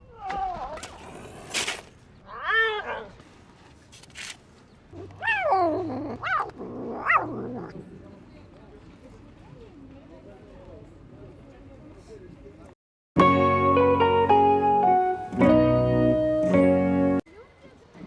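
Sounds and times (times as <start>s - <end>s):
cat hissing: 0.8s - 2.1s, 5.0s - 7.8s
cat meowing: 5.2s - 7.7s.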